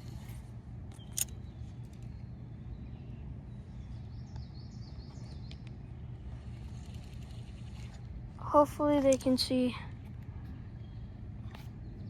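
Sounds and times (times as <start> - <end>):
sharp click: 0.9 - 1.4.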